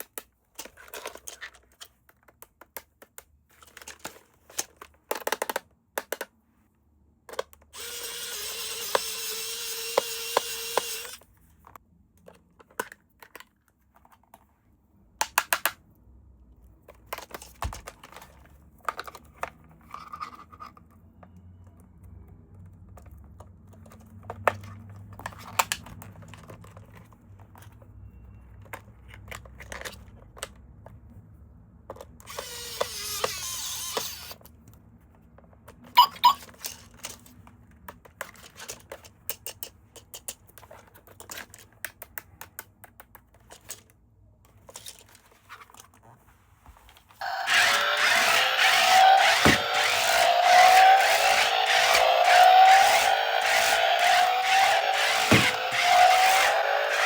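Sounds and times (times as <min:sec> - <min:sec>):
small electric motor whirring: 0:07.8 - 0:11.2, 0:32.3 - 0:34.4, 0:47.2 - 0:57.0.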